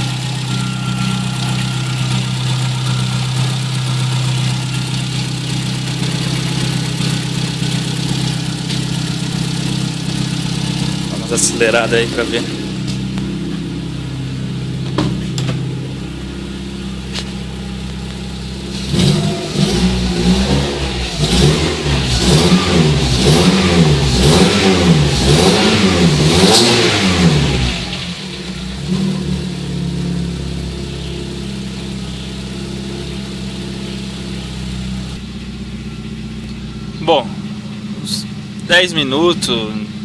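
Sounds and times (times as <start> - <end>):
car engine idling and revving: 0.0 - 40.0.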